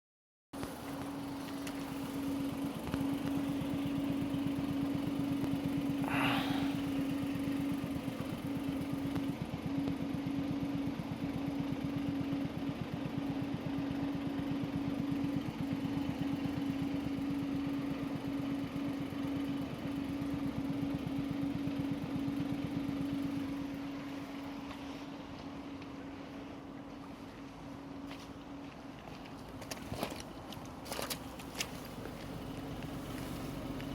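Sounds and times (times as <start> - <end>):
rapid ticking from car wheel: 0.6 - 24.8
steady hum: 0.6 - 33.9.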